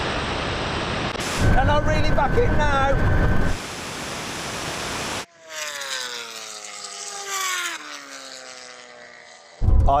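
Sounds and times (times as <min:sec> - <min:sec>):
high-speed wind and road rush: 0:00.0 - 0:05.3, 0:09.6 - 0:10.0.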